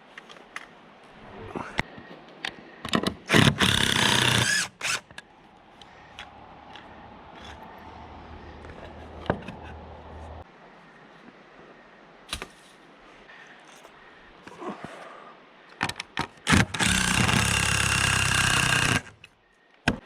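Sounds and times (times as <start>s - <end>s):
power drill burst: 16.5s - 19.2s.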